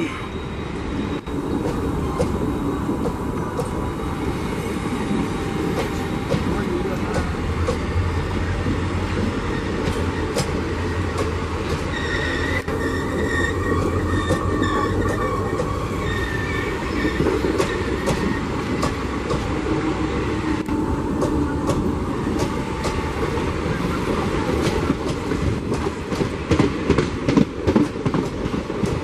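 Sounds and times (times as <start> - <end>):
faint high wheel squeal: 0.0 - 2.9, 11.8 - 18.7
train rumbling past: 0.0 - 29.0.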